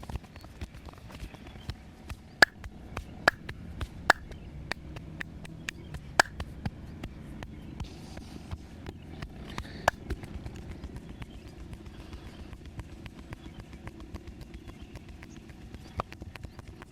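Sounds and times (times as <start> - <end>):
hand slaps and taps on body: 3.3 - 4.3, 5.2 - 6.5.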